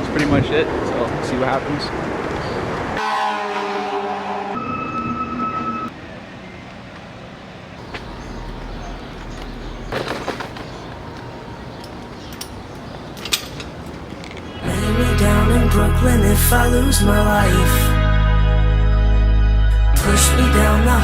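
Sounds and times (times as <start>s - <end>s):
traffic hum: 0.0s - 17.8s
vehicles passing: 0.0s - 18.0s
engine whine: 7.8s - 17.4s.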